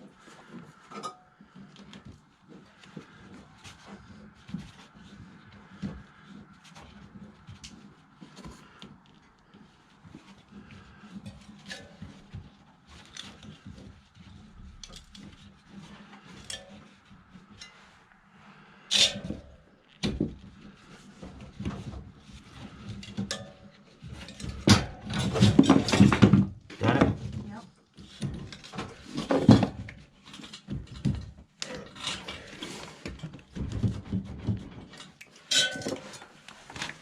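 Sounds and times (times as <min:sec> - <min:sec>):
tools and pipe parts clinking: 0:00.8 - 0:02.0, 0:10.6 - 0:17.9, 0:18.9 - 0:20.0, 0:22.5 - 0:26.5, 0:28.1 - 0:37.0.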